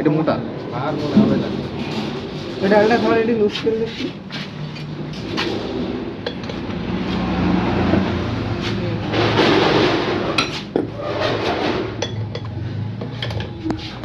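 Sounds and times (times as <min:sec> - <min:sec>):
engine running: 0:04.2 - 0:14.0.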